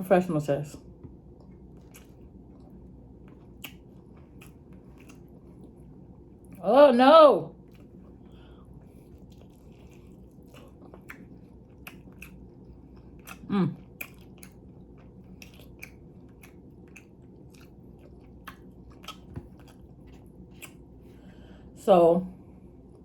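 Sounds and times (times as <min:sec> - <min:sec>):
person chewing and crunching food: 0:01.0 - 0:06.6, 0:07.6 - 0:21.7.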